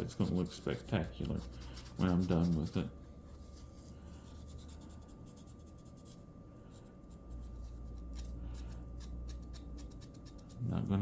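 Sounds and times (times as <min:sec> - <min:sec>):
hand-sanding wood scratching: 0:00.0 - 0:02.9
faint steady high hum: 0:00.0 - 0:11.0.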